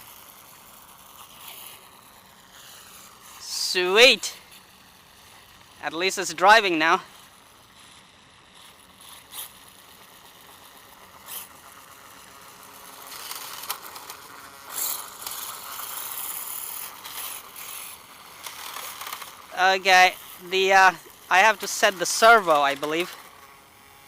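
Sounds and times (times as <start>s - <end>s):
electric motor whirring: 0.0s - 24.0s
small clicks: 13.0s - 20.4s.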